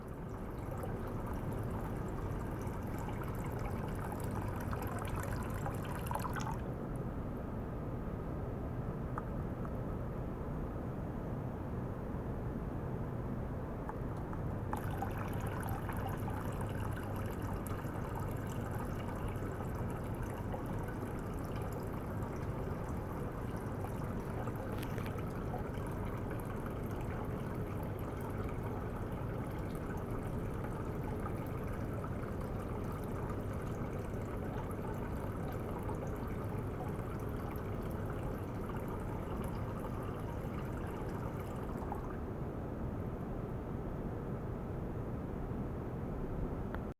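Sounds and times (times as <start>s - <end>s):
water trickling in a tank: 0.0s - 7.1s, 14.0s - 42.3s.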